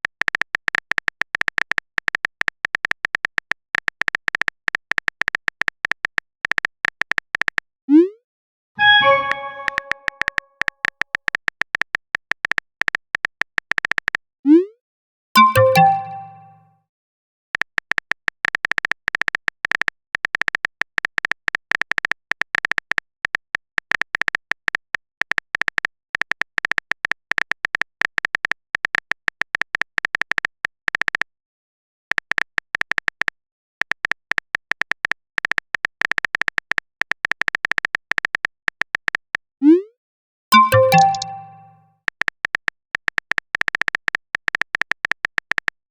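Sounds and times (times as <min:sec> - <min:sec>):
short rising blip: 0:08.8 - 0:10.3
keyboard typing clicks: 0:08.8 - 0:10.5, 0:15.4 - 0:16.6, 0:40.6 - 0:41.8.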